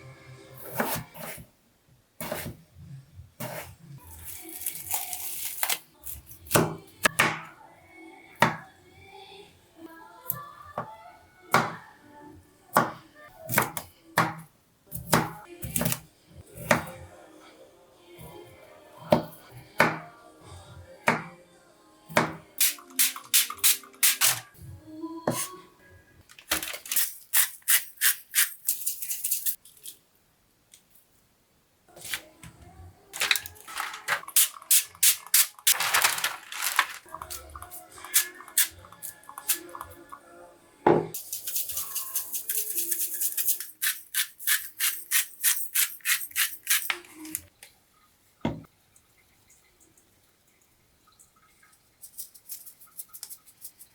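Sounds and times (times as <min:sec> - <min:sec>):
quiet background music: 0:00.0 - 0:28.0, 0:31.4 - 0:53.9
knife chopping on cutting board: 0:22.1 - 0:22.4.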